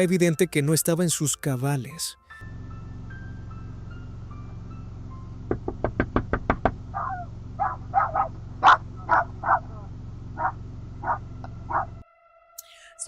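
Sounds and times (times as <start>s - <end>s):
low musical drone: 2.3s - 5.6s, 6.8s - 13.0s
sharp knocks: 5.5s - 6.8s
dog barking: 6.9s - 12.0s.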